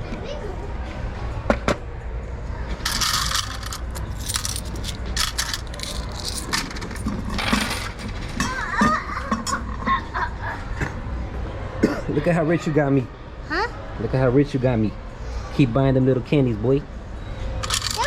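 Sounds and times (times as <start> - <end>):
coins clinking and pouring: 2.8 - 8.2, 17.6 - 18.0.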